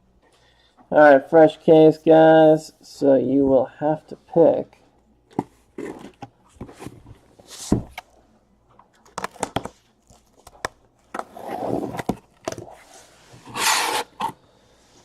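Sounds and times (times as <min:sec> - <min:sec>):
scraping rustle of cardboard: 0:12.7 - 0:14.3.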